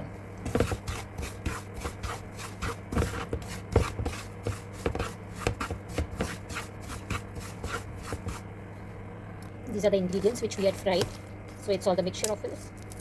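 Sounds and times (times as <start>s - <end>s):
spatula scraping a pan: 0.5s - 8.4s.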